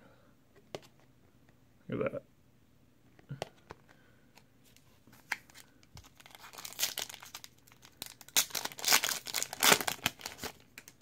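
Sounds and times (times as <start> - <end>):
wrapper tearing and crinkling: 6.0 - 11.0.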